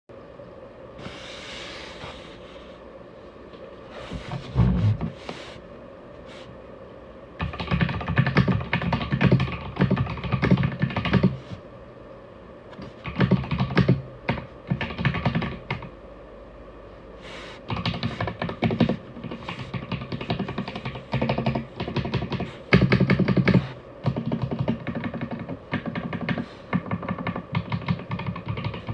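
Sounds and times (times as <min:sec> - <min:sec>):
mechanical keyboard typing: 0:07.4 - 0:11.4, 0:12.8 - 0:15.9, 0:17.7 - 0:28.9.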